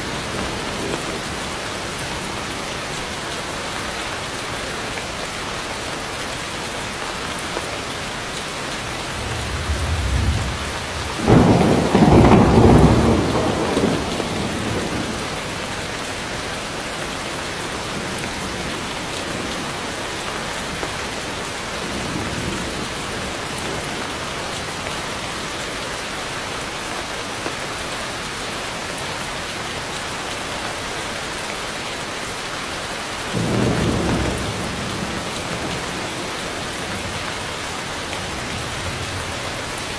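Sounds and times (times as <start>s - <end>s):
heavy rain on foliage: 0.0s - 39.9s
rolling thunder: 8.7s - 15.7s, 33.4s - 36.2s.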